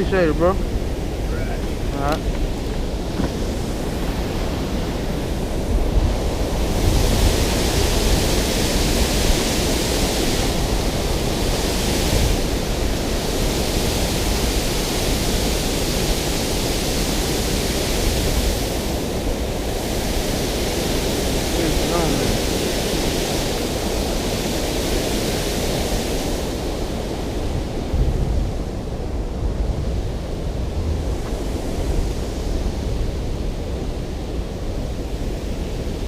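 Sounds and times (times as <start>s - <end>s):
water rushing through spillway: 0.0s - 36.0s.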